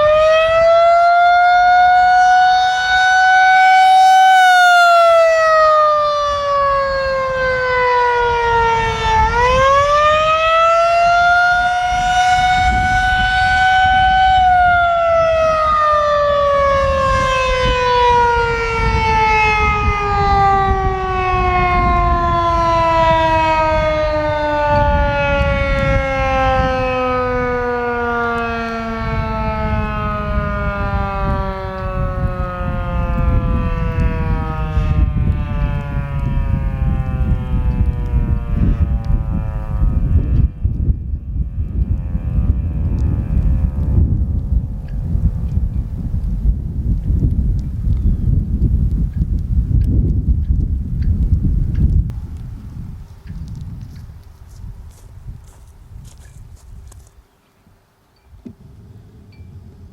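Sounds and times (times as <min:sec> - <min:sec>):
warning siren wailing: 0:00.0 - 0:46.1
wind rumble on microphone: 0:00.0 - 0:59.9.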